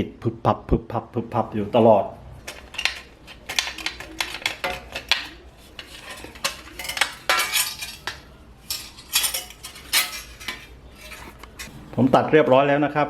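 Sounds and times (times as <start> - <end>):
sheet metal scraping and clinking: 2.6 - 11.7.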